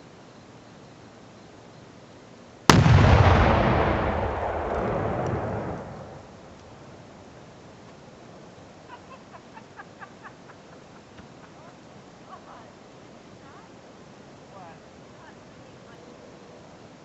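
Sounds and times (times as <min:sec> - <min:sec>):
explosion blast with rumble: 0:02.7 - 0:06.9.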